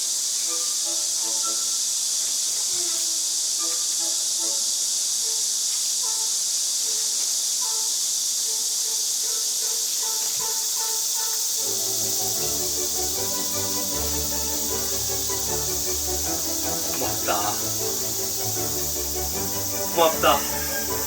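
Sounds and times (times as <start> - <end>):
high-pitched hiss: 0.0 - 21.0
soft melodic background music: 11.8 - 21.0.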